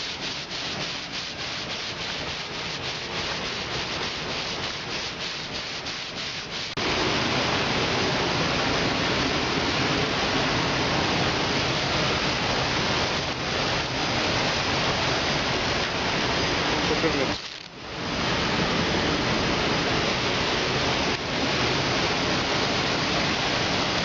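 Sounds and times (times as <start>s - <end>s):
hand sanding metal: 0.0s - 6.8s
steady sanding hiss: 0.0s - 6.9s.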